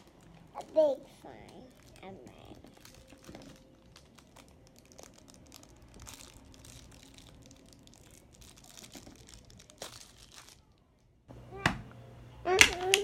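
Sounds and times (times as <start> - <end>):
toys crinkling and clicking: 1.4 - 11.1, 12.5 - 13.0.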